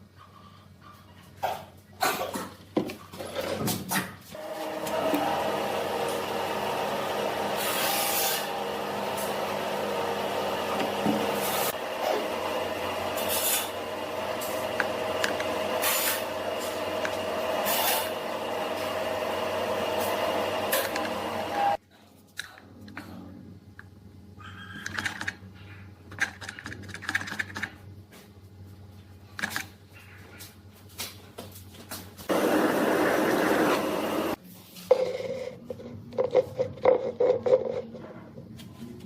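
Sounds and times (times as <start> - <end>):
lathe motor hum: 4.4 - 21.8, 32.3 - 34.4.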